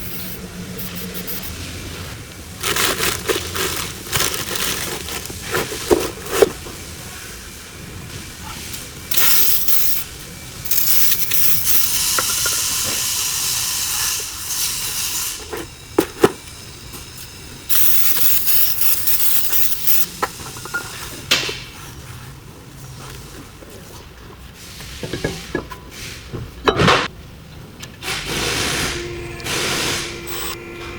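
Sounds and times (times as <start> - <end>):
spray hissing: 0.0 - 1.7, 9.1 - 14.2, 17.7 - 20.1.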